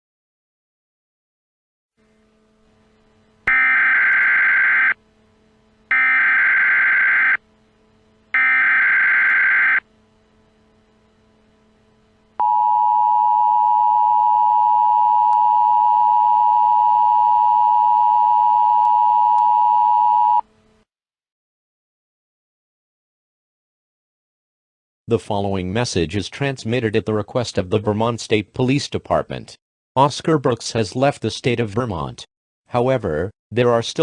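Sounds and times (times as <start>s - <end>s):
data header screech bursts: 3.5s - 5.0s, 5.9s - 7.4s, 8.4s - 9.8s
two-tone alert signal: 3.5s - 5.0s, 8.4s - 9.8s.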